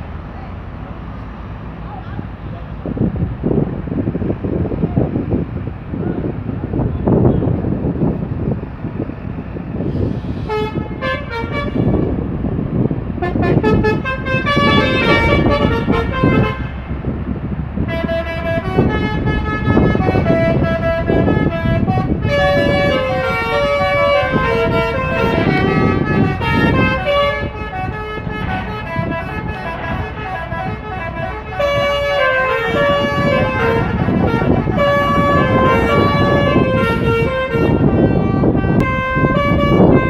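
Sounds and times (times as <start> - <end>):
low rumble of bus engines: 0.0 - 40.0
bus horns playing melodies: 2.9 - 40.0.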